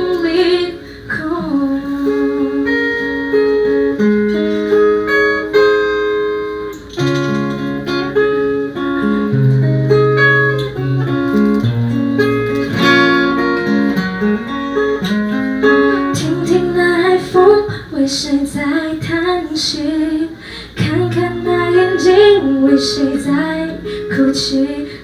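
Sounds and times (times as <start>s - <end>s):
guitar chords and melody: 0.0s - 17.9s, 18.6s - 25.0s.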